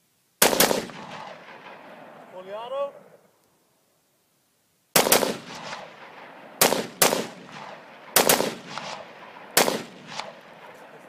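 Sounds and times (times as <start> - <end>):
rifle shots with echo: 0.4 - 3.2, 5.0 - 11.0.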